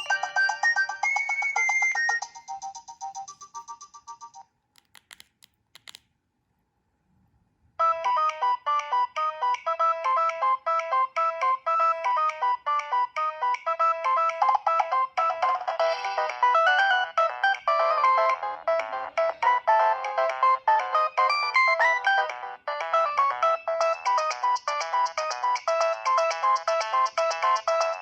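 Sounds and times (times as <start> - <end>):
phone ringtone tune: 0.0 - 4.5, 7.8 - 28.0
faint clicks: 4.8 - 6.1.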